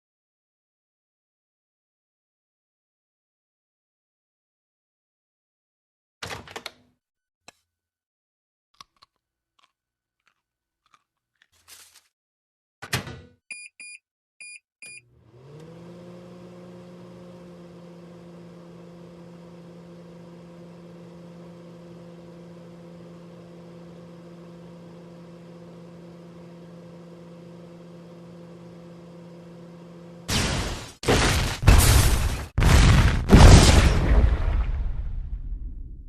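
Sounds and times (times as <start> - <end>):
keypad beeps: 13.5 - 15.0
microwave oven humming: 14.8 - 30.9.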